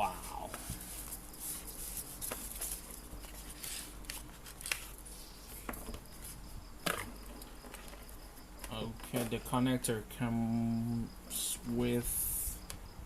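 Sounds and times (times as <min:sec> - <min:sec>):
packaging rustling: 0:00.5 - 0:06.0.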